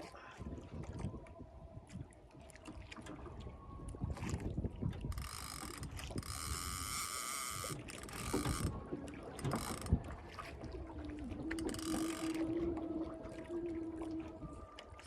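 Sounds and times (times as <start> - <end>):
fishing reel ratcheting buzz: 5.2 - 8.7, 11.6 - 12.4.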